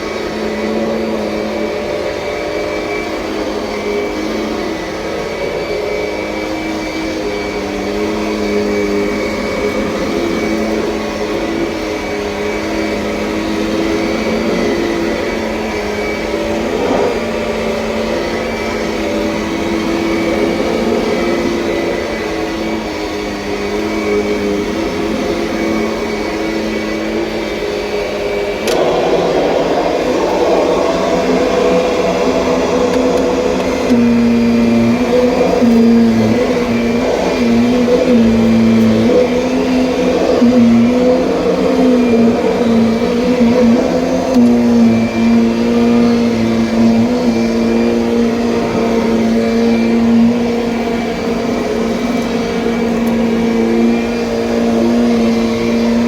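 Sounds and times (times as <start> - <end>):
vacuum cleaner motor drone: 0.0 - 56.0
click: 28.6 - 29.4, 44.3 - 44.6, 53.0 - 53.2.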